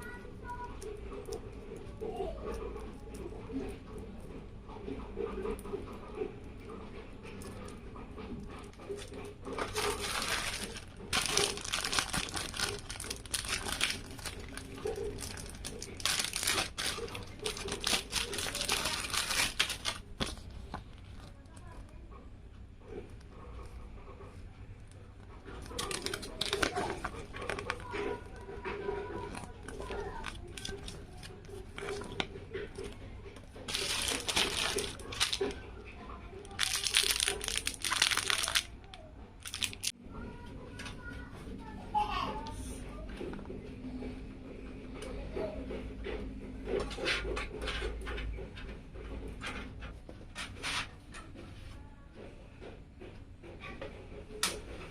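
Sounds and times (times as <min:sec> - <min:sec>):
packaging crinkling: 0:08.9 - 0:21.3, 0:25.6 - 0:32.9, 0:33.7 - 0:35.6, 0:36.4 - 0:39.9.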